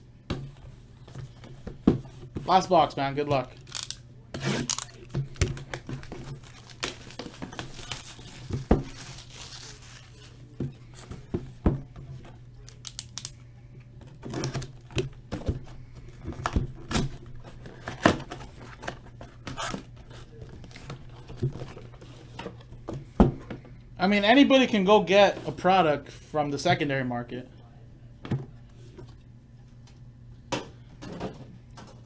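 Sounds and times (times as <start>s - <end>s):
steady low hum: 0.0s - 32.0s
plastic wrap crinkling and tearing: 3.4s - 10.6s, 12.7s - 13.4s.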